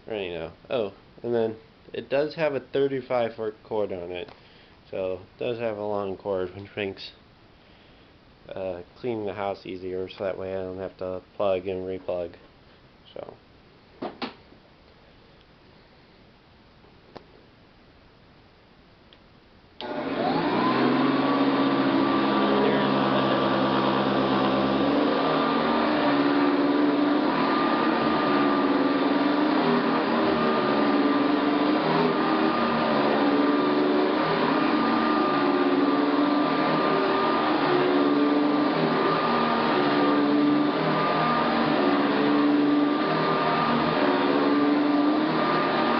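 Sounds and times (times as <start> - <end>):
vacuum cleaner motor whining: 19.8 - 45.9.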